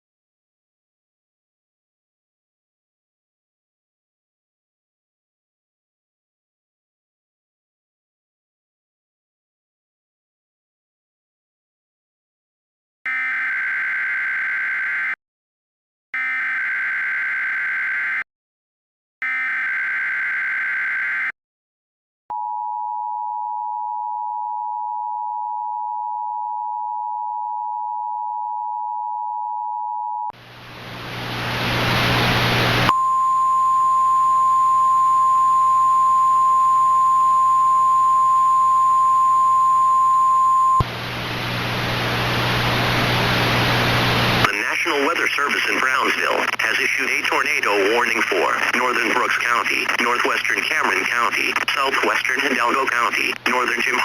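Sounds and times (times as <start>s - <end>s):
steady warning tone: 32.7s - 40.8s
two-tone attention signal: 32.9s - 40.8s.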